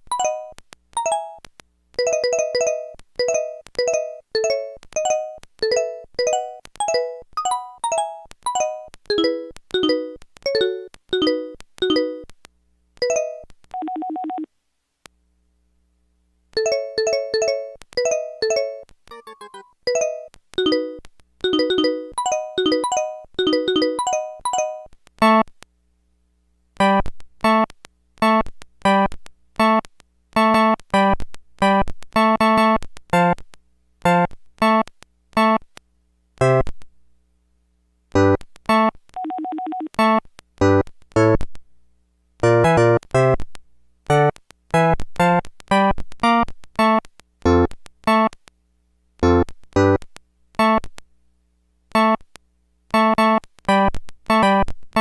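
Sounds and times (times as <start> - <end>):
synthesizer phone ringtone: 0.1 - 1.4, 2.0 - 12.3, 13.0 - 14.5, 16.6 - 24.9.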